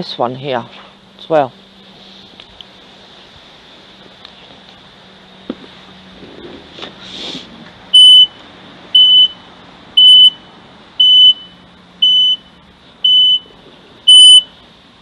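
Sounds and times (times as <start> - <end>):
high electronic beeps: 14.1 - 14.5.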